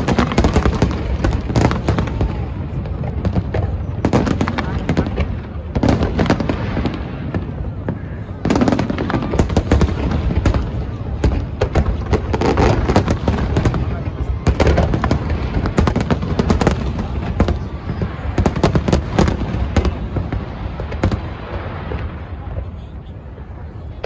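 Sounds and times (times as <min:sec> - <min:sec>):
fireworks cracks and pops: 0:00.0 - 0:22.8
low rumble of fireworks booms: 0:00.0 - 0:24.0.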